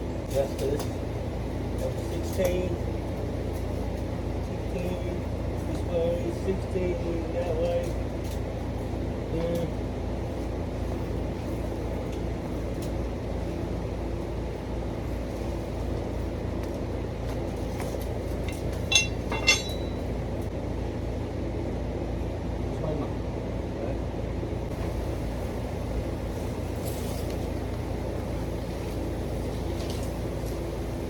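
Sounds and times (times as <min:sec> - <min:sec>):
low mechanical hum: 0:00.0 - 0:31.0
sharp metallic clinks: 0:18.5 - 0:20.2.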